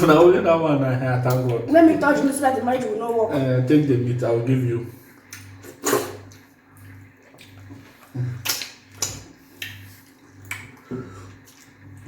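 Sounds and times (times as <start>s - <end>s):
wet slurps and smacks eating: 5.2s - 12.0s.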